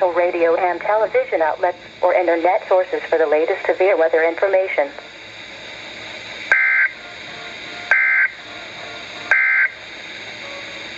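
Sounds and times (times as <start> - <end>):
radio hiss: 0.0 - 10.9
digital data tone bursts: 6.5 - 10.9.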